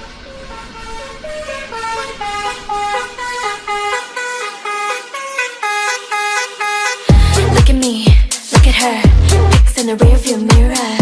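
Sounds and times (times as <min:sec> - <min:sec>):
low engine rumble: 0:00.0 - 0:05.2, 0:07.1 - 0:08.1, 0:09.1 - 0:09.6
tune on car horn notes: 0:00.0 - 0:07.6.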